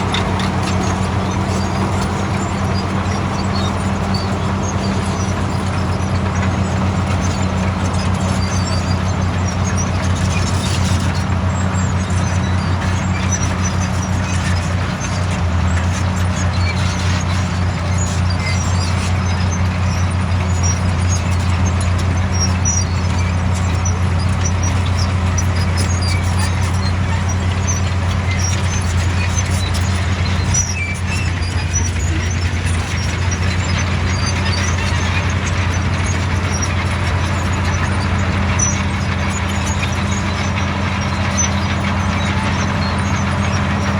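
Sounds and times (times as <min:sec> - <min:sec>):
diesel engine droning: 0:00.0 - 0:43.9
faint high squeaks and clinks: 0:00.0 - 0:43.9.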